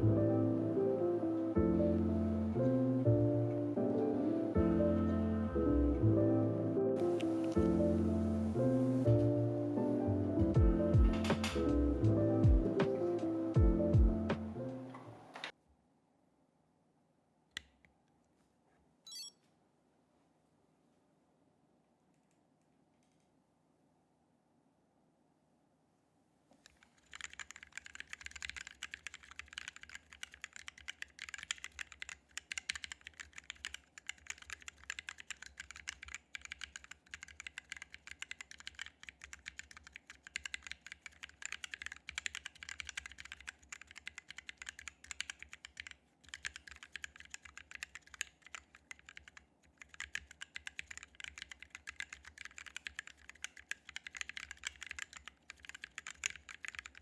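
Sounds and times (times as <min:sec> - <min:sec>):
mechanical keyboard typing: 0:26.7 - 0:57.0.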